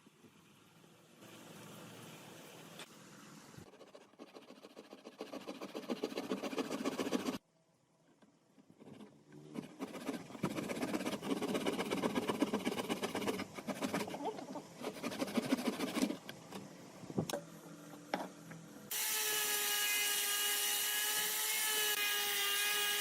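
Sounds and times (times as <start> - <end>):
scratchy strokes on wood: 3.7 - 7.4, 8.8 - 16.2.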